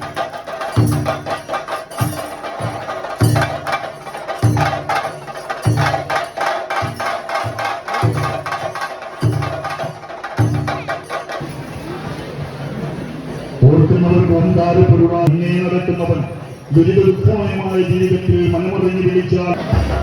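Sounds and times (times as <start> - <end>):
fast ritual drumming: 0.0 - 11.8, 16.0 - 20.0.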